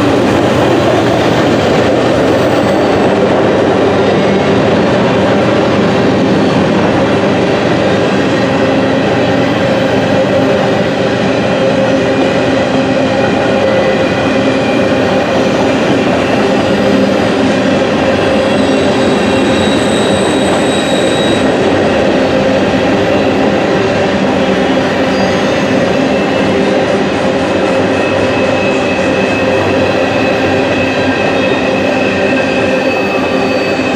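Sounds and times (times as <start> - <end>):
train wheels rumbling on rail: 0.0 - 33.9
high wheel squeal: 13.4 - 23.8, 24.5 - 26.8, 27.7 - 33.9.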